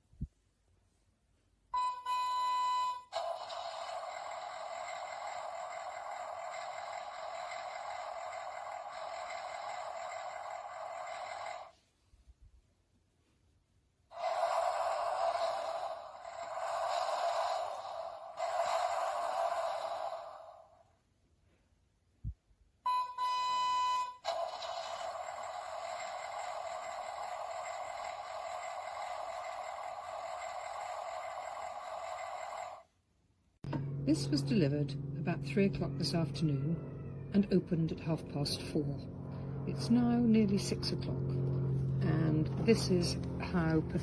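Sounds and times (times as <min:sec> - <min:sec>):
toy speaker beeping tone: 0:01.8 - 0:03.1, 0:22.9 - 0:24.2
toy electronic engine hiss: 0:03.1 - 0:11.7, 0:14.1 - 0:20.8, 0:24.2 - 0:32.8.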